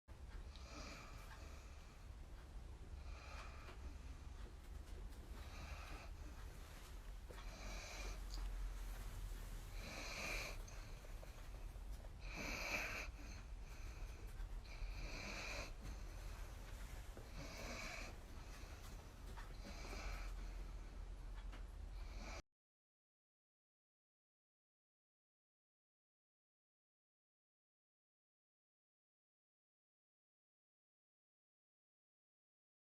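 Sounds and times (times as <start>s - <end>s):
dog snoring: 0.4s - 2.0s, 3.0s - 4.4s, 5.2s - 20.9s, 21.9s - 22.4s.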